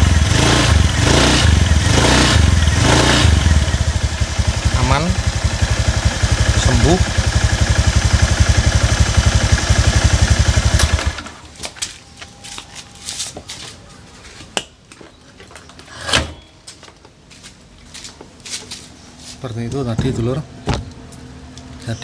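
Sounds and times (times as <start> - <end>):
scooter engine running: 0.0 - 11.5.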